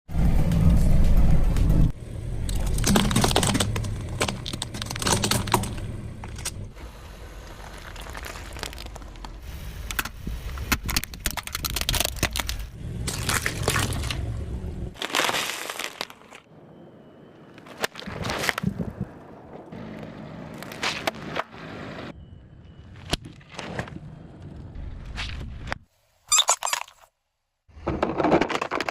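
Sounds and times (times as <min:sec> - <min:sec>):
low rumble: 0:00.1 - 0:10.7, 0:11.4 - 0:15.0
tyre crushing brittle objects: 0:02.4 - 0:06.5, 0:07.6 - 0:14.3, 0:15.0 - 0:16.5, 0:27.8 - 0:28.9.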